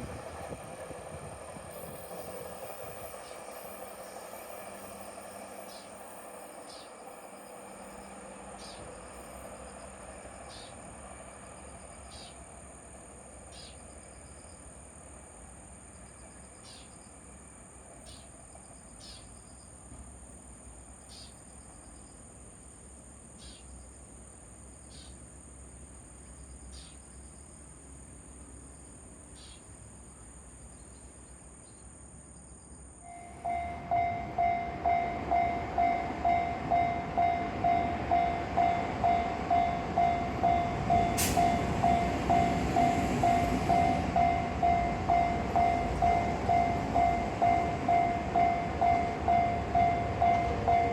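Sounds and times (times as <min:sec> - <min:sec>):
level-crossing warning bell: 0:01.6 - 0:10.1, 0:33.1 - 0:50.9
high-pitched insect drone: 0:01.7 - 0:09.9
short insect chirps: 0:01.7 - 0:10.8, 0:13.5 - 0:14.8, 0:26.0 - 0:50.7.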